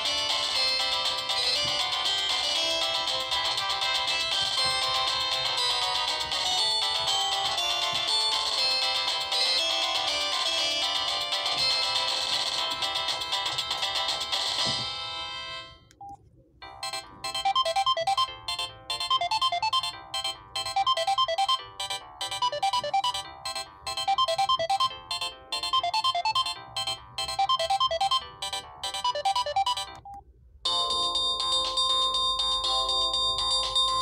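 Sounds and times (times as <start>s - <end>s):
mobile phone ringtone melody: 0.0s - 15.9s, 16.6s - 34.0s.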